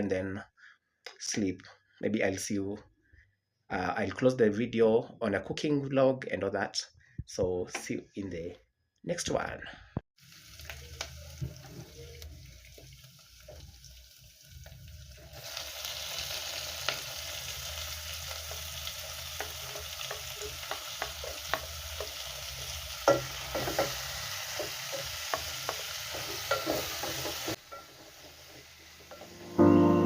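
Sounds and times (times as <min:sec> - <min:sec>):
food sizzling in a pan: 0:10.2 - 0:30.0.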